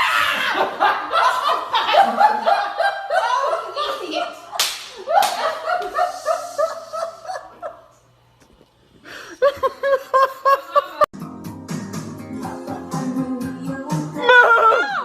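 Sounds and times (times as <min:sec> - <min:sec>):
person laughing: 0:00.2 - 0:04.2, 0:05.1 - 0:07.9, 0:09.1 - 0:11.1.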